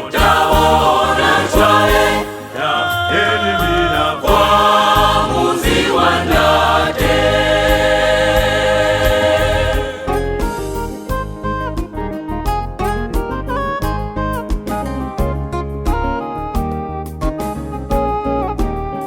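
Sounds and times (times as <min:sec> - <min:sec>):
choir singing gospel in harmony: 0:00.0 - 0:10.8
instrumental backing: 0:00.0 - 0:19.0.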